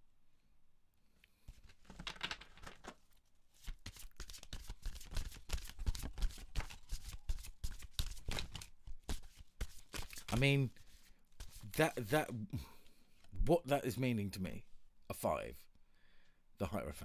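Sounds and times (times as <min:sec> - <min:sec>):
cards being shuffled: 0:01.5 - 0:03.0, 0:03.6 - 0:12.1.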